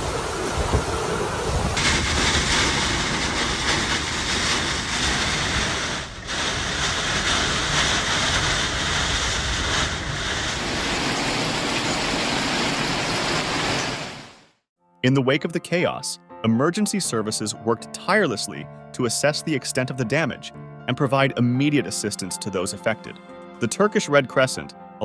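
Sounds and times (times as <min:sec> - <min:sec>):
rushing water: 0:00.0 - 0:08.0, 0:10.3 - 0:14.4
rushing wind: 0:00.0 - 0:14.4.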